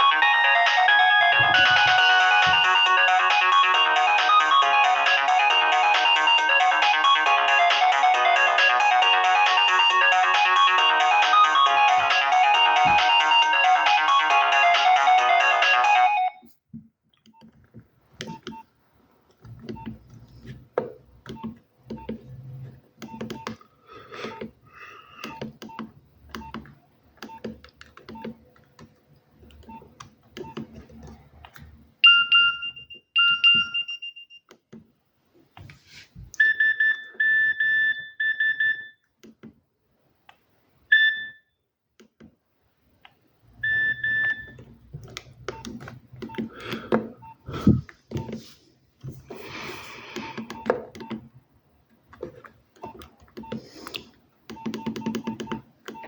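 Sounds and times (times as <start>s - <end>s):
mobile phone key beeps: 21.3s - 22.2s, 32.0s - 34.5s, 36.4s - 39.0s, 40.9s - 41.4s, 43.6s - 44.6s, 54.5s - 56.0s.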